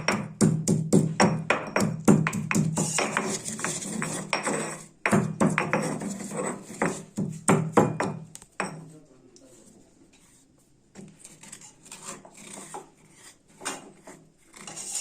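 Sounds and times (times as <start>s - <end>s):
pestle pounding in mortar: 0.0s - 8.3s.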